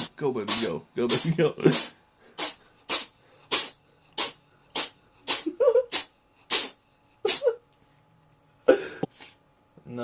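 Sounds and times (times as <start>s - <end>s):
cat sneezing: 0.0s - 7.6s.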